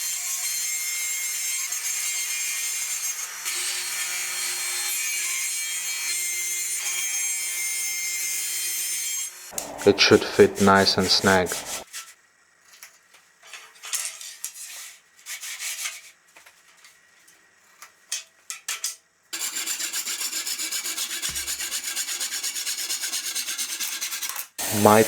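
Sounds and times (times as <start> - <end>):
rapid even scrubbing: 9.6 - 11.8
wood rubbing and sliding in groove: 9.6 - 11.8.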